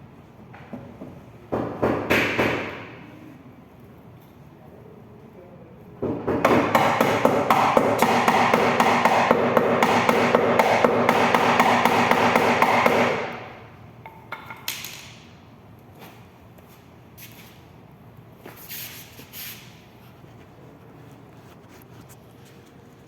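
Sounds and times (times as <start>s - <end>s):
hammer tapping metal: 6.3s - 13.4s.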